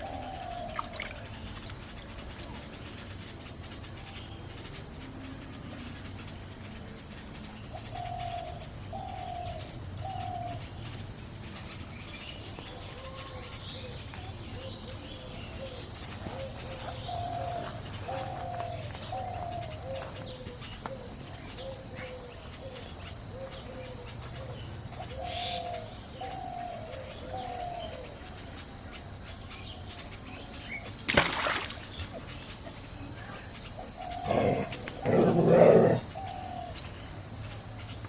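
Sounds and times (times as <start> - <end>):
dove cooing: 0.0 - 1.5, 5.6 - 11.2, 12.6 - 28.5, 32.0 - 37.2
small birds chirping: 0.0 - 38.0.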